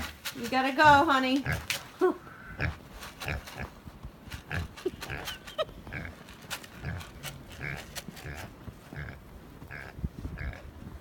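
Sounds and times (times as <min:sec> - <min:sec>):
pig grunting: 0:06.8 - 0:10.7.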